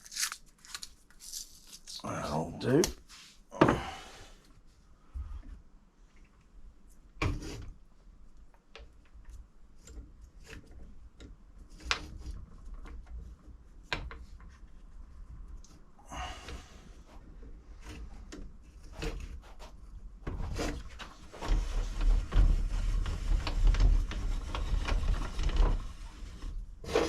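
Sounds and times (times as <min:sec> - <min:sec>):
scraping slide: 0:22.6 - 0:27.0.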